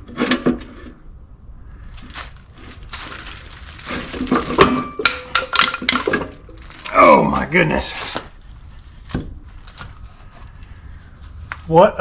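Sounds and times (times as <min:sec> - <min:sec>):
metal clanking and scraping: 0:00.0 - 0:01.0.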